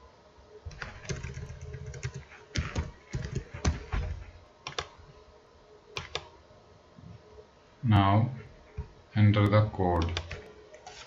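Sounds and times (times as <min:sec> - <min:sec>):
keyboard typing clicks: 0:00.7 - 0:03.9, 0:04.6 - 0:04.9, 0:06.0 - 0:06.3, 0:10.0 - 0:10.8.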